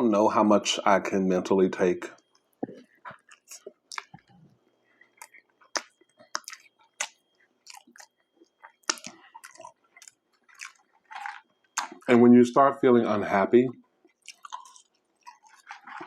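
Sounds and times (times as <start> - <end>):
chewing and biting food: 2.4 - 12.2, 13.9 - 16.0.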